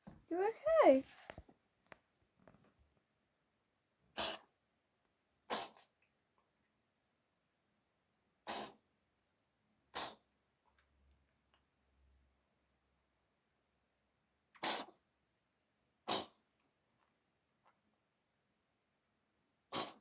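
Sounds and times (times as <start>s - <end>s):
cat sneezing: 4.2s - 4.5s, 5.5s - 5.9s, 8.4s - 8.8s, 9.9s - 10.2s, 14.6s - 15.0s, 16.1s - 16.4s, 19.7s - 20.0s.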